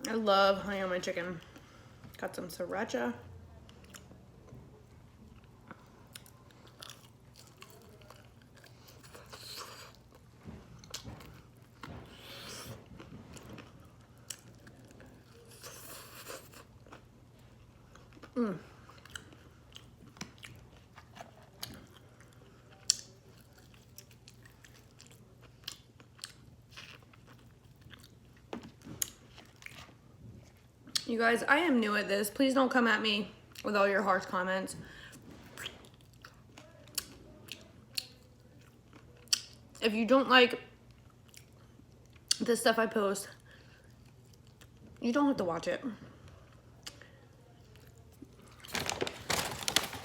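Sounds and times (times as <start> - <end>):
biting and chewing fried chicken: 3.6 - 31.1.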